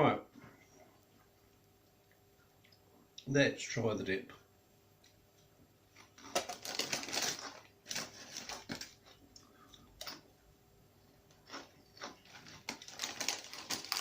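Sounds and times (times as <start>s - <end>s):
crunchy chips being chewed: 6.2s - 10.2s, 11.3s - 14.0s.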